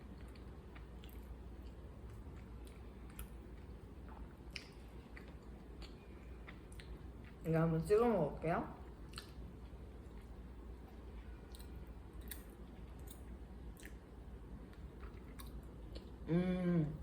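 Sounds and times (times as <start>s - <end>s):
person chewing food: 0.0s - 7.4s, 8.8s - 16.2s
person humming: 16.3s - 17.0s.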